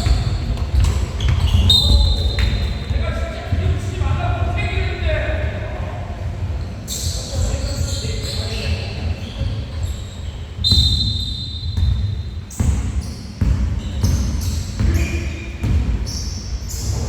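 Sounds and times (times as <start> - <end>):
basketball bouncing: 0.0 - 4.2, 11.7 - 16.2.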